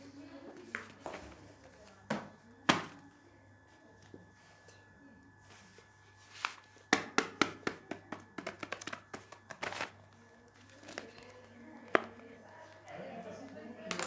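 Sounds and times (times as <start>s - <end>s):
fidget toys clicking and crinkling: 7.8s - 14.0s.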